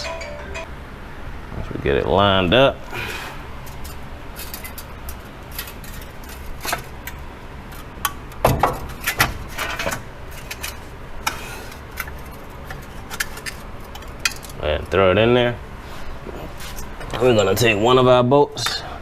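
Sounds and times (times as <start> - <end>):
metal parts clicking and clinking: 3.7 - 14.6.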